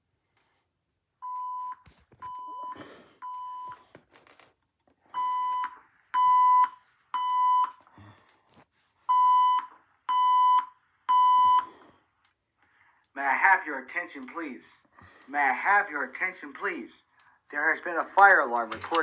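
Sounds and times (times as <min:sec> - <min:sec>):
fire alarm beeping: 0:01.2 - 0:03.9, 0:05.2 - 0:07.8, 0:09.1 - 0:11.8.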